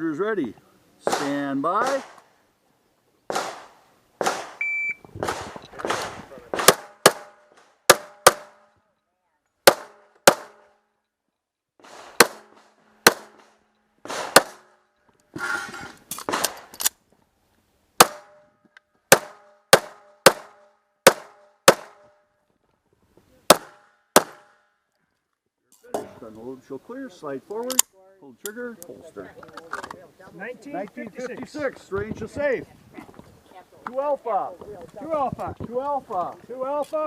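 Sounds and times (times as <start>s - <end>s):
pistol shots: 1.1s - 2.3s, 3.3s - 4.6s, 5.2s - 8.7s, 9.6s - 10.7s, 11.8s - 14.8s, 16.2s - 16.7s, 18.0s - 18.4s, 19.1s - 22.1s, 23.5s - 24.6s.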